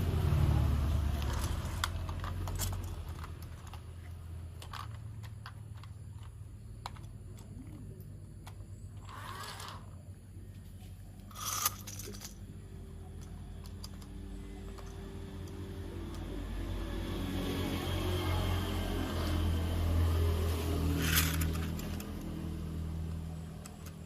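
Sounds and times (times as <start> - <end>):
plastic toy parts clicking: 1.1 - 7.7, 11.2 - 12.5, 13.1 - 16.2, 21.0 - 22.4.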